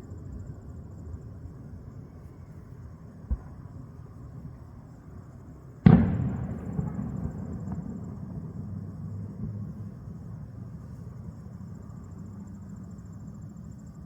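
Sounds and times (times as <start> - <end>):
crickets chirping: 0.0 - 14.0
firework burst rumble: 5.8 - 11.5
steady low rumble: 5.8 - 13.6.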